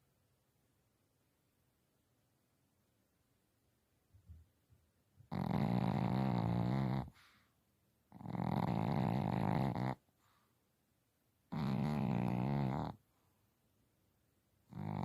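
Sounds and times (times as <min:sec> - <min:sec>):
pet snoring: 0:05.3 - 0:07.2, 0:08.1 - 0:10.0, 0:11.5 - 0:13.0, 0:14.7 - 0:15.0.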